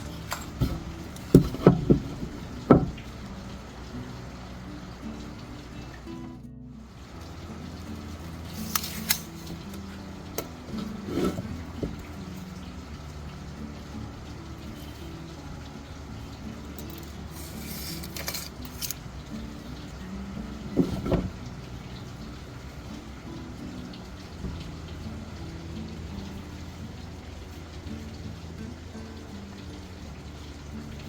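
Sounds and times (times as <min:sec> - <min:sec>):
background music with low melody: 0:00.0 - 0:31.0
sharp clicks and clinks: 0:16.8 - 0:19.0.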